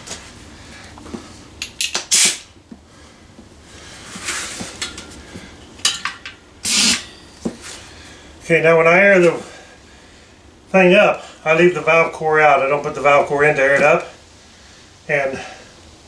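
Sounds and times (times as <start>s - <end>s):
short hissing bursts: 2.1s - 2.5s, 6.6s - 7.0s
metal tools clinking: 5.8s - 7.5s.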